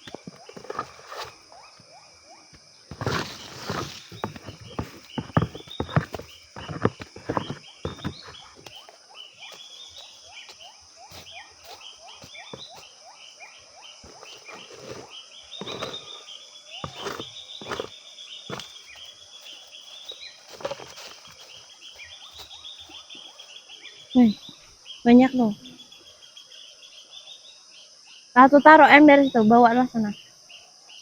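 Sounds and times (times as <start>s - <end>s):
high insect drone: 0.0s - 31.0s
sharp knocks and thuds: 2.9s - 8.9s, 11.1s - 12.9s.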